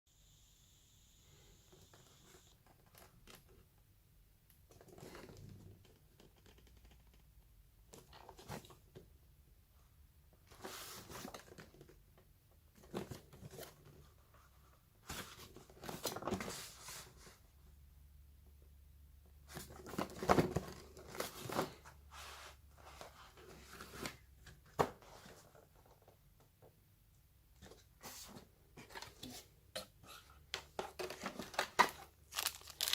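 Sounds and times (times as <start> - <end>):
packaging rustle: 31.0 - 32.9.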